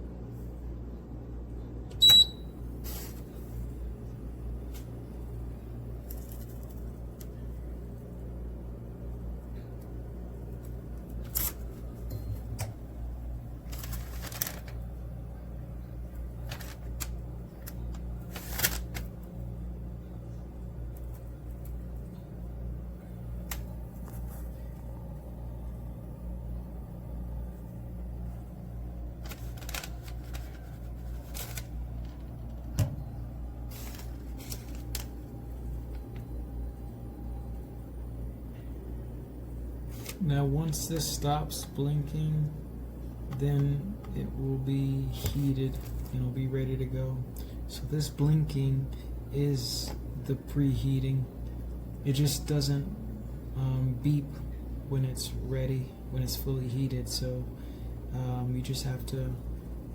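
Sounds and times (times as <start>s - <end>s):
oven humming: 0.0s - 59.9s
oven control panel beep: 1.9s - 2.6s.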